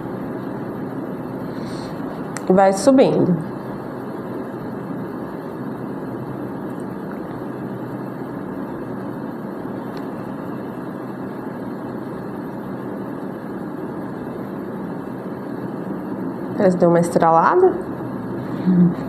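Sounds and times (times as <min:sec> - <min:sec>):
machine-like background hum: 0:00.0 - 0:19.0.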